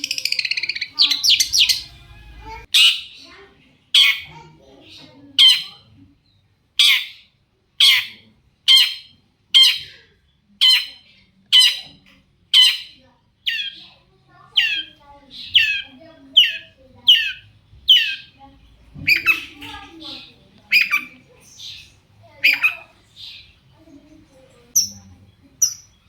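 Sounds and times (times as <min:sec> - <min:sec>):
bird harsh rasping calls: 0:00.0 - 0:03.4, 0:05.4 - 0:05.8, 0:06.8 - 0:10.0, 0:10.6 - 0:12.0, 0:12.6 - 0:13.9, 0:14.5 - 0:18.4, 0:19.0 - 0:23.6.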